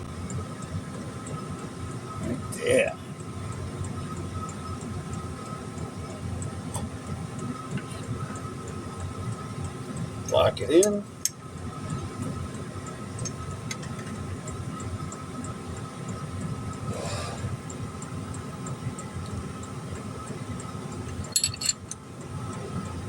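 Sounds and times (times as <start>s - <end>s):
mechanical hum with whine: 0.0s - 23.0s
light metallic clinks: 21.2s - 22.0s.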